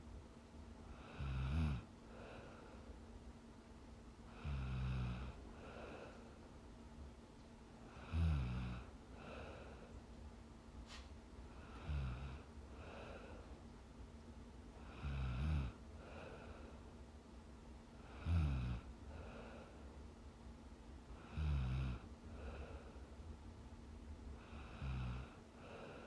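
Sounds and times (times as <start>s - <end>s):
woman snoring: 0.9s - 2.4s, 4.3s - 5.9s, 7.9s - 9.4s, 11.6s - 13.3s, 14.8s - 16.3s, 18.0s - 19.4s, 21.2s - 22.8s, 24.4s - 26.0s
soft breath: 2.0s - 3.2s, 5.2s - 6.7s, 8.8s - 13.8s, 15.8s - 17.2s, 18.0s - 20.2s, 22.2s - 23.4s, 24.3s - 26.0s.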